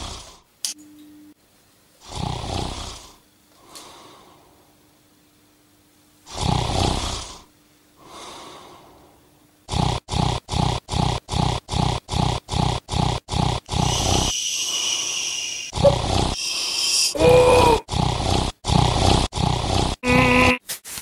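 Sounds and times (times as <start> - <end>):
person snoring loudly: 0.0 - 0.4, 2.0 - 3.2, 6.3 - 8.6, 9.7 - 20.6
quiet breath out: 13.8 - 17.2.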